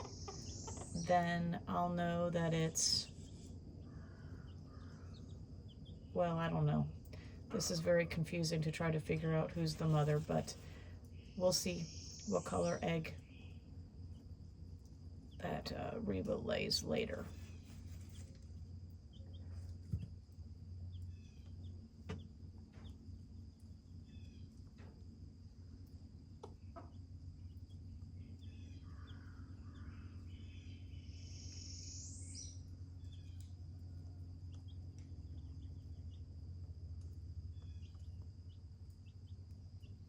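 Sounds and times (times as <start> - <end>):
low hum: 0.0 - 40.0
high insect drone: 11.1 - 17.6, 20.0 - 40.0.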